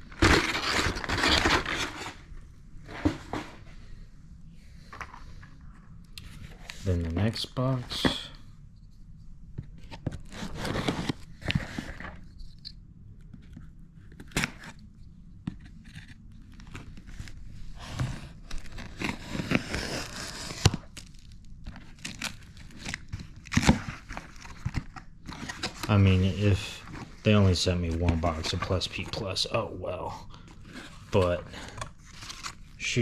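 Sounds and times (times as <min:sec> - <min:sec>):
packaging crinkling and rustling: 0:00.0 - 0:03.6, 0:09.8 - 0:12.6, 0:15.6 - 0:29.6, 0:30.3 - 0:33.0
packing tape tearing: 0:00.1 - 0:02.2, 0:18.4 - 0:25.9.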